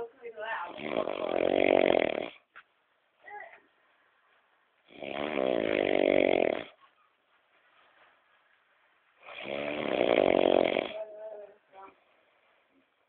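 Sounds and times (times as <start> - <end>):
man snoring loudly: 0.7 - 2.4, 4.9 - 6.7, 9.3 - 11.0.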